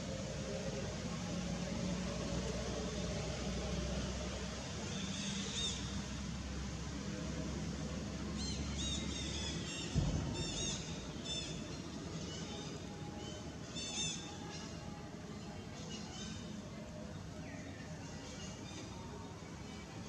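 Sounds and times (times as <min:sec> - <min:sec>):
low background hum: 0:00.0 - 0:20.0
thump: 0:09.9 - 0:11.0.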